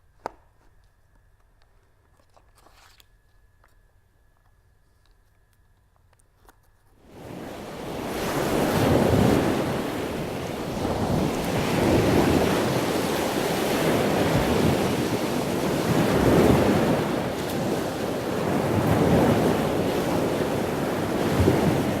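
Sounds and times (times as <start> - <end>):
rushing water and waves: 7.1 - 22.0
wind buffeting microphone: 7.1 - 22.0.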